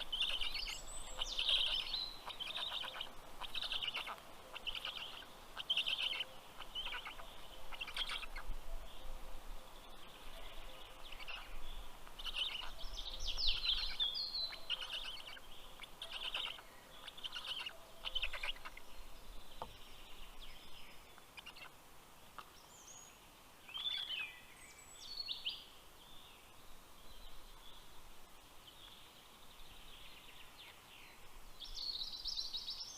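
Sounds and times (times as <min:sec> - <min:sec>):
birds calling in rapid pulses: 0:00.0 - 0:32.9.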